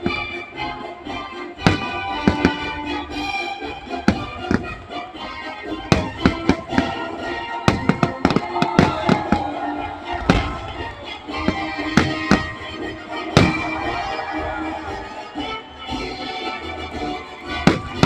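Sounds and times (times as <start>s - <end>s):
music playing: 0.0s - 18.0s
fireworks bangs: 1.6s - 3.1s, 4.0s - 15.6s, 17.5s - 18.0s.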